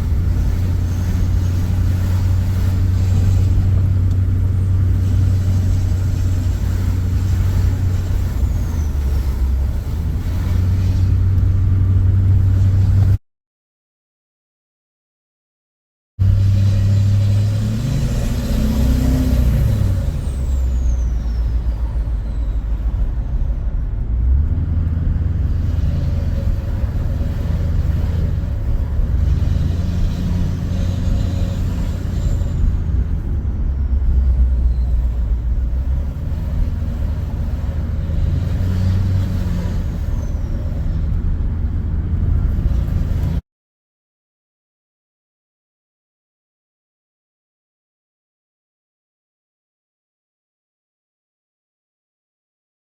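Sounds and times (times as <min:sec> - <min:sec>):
diesel pickup engine droning: 0:00.0 - 0:13.2, 0:16.2 - 0:43.4.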